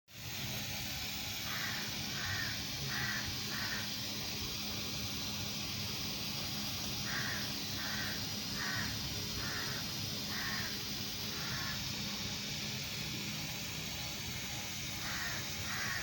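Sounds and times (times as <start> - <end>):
steady hiss: 0.1 - 16.0
crow cawing: 1.5 - 3.9, 7.0 - 11.9, 15.0 - 16.0.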